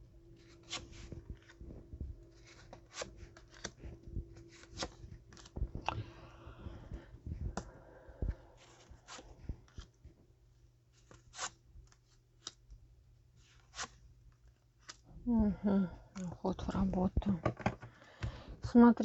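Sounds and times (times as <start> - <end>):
cards rustling: 0.3 - 7.7, 8.3 - 10.2, 10.9 - 12.7, 13.4 - 15.0
cards clicking and tapping: 0.4 - 6.1, 17.2 - 18.4.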